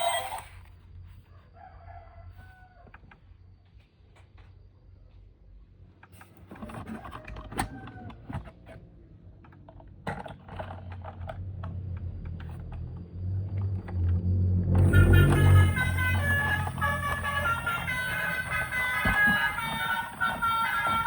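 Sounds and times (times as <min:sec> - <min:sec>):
low hum: 0:14.4 - 0:21.0.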